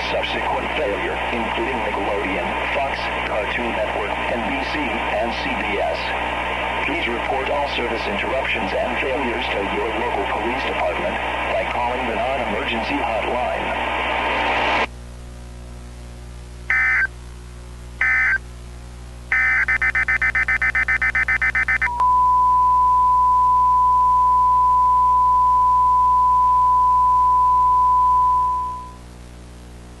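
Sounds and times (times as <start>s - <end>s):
steady electronic tone: 16.7s - 17.1s, 19.3s - 29.0s
warbling digital data bursts: 19.3s - 21.9s.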